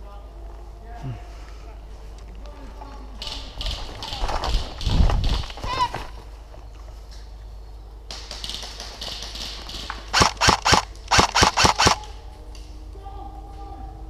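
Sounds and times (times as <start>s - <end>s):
suppressed airsoft rifle shots: 8.2s - 12.1s.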